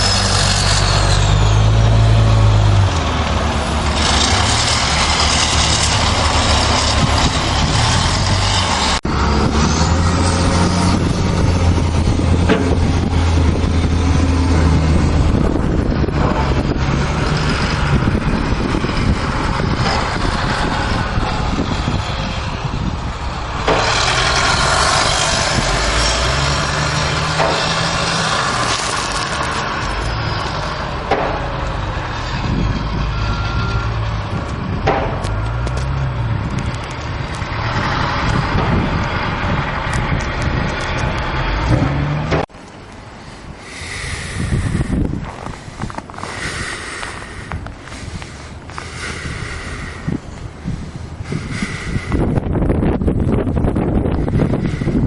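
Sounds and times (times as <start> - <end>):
large vehicle engine running: 0.0 - 55.0.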